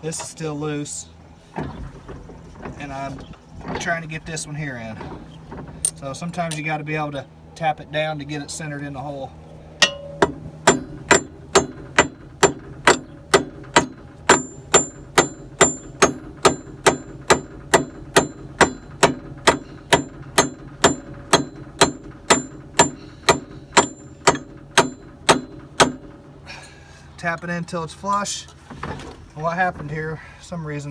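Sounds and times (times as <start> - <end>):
hammer tapping metal pin: 9.8 - 26.1.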